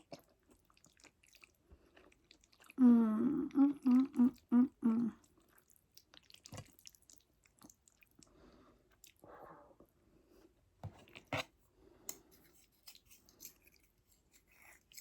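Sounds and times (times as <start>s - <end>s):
quiet chewing: 0.0s - 2.8s, 3.5s - 9.2s
woman humming with mouth full: 2.8s - 5.2s.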